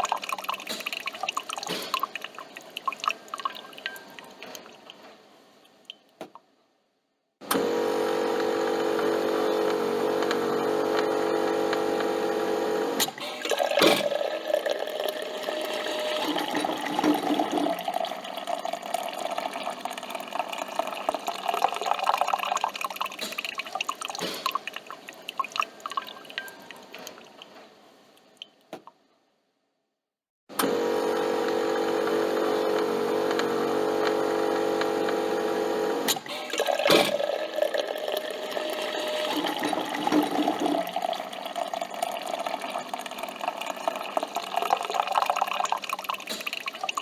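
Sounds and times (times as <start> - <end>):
coffee dripping into cup: 0.0 - 5.0, 13.3 - 27.5, 36.3 - 47.0
coffee machine pump buzzing: 7.4 - 22.3, 30.5 - 46.2
machine clunk: 13.0 - 14.2, 36.1 - 37.3.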